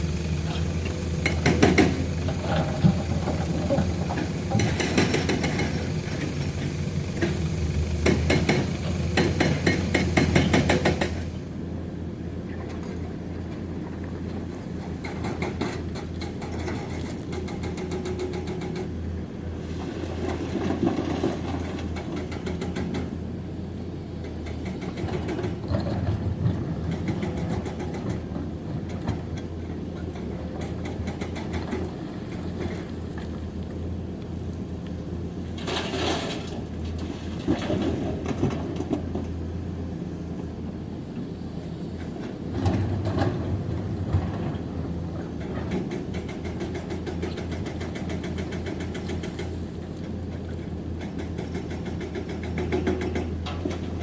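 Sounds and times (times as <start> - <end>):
diesel engines running: 0.0 - 11.8.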